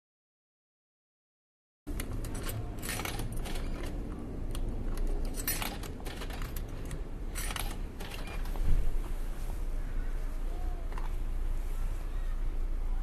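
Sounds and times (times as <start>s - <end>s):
vending machine hum: 1.9s - 13.0s
coins jingling and clinking: 5.2s - 8.4s.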